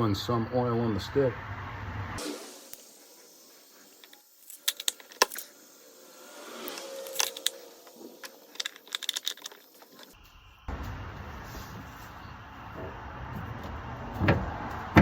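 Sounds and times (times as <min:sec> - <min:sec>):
oil dipstick clicking and rattling: 0:04.0 - 0:05.4, 0:08.2 - 0:10.2.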